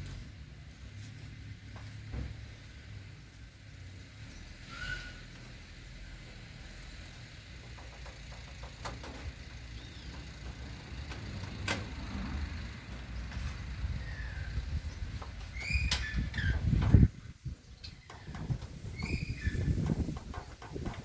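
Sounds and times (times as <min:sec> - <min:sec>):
wind buffeting microphone: 0:13.2 - 0:21.0.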